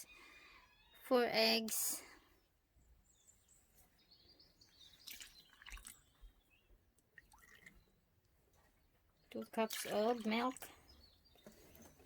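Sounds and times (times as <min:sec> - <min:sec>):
faint bird chirps: 0:00.0 - 0:01.1.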